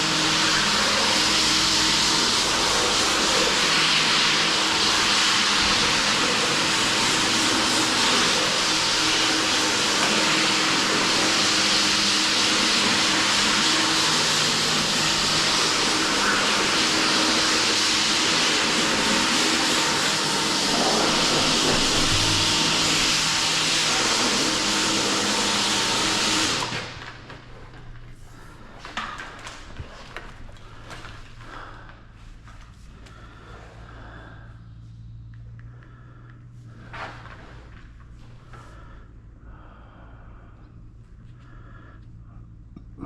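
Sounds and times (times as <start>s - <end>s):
machine rushing noise: 0.0s - 27.2s.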